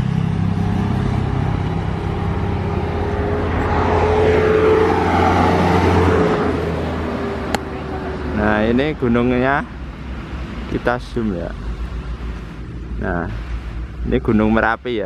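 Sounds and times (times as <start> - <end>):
vehicle passing close by: 0.0 - 10.9
low engine hum: 0.0 - 15.0.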